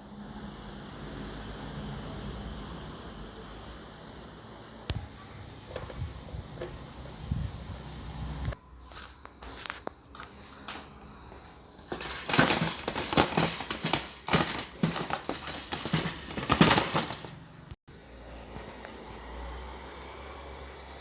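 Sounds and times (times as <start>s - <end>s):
objects crinkling and rattling: 8.9s - 17.4s.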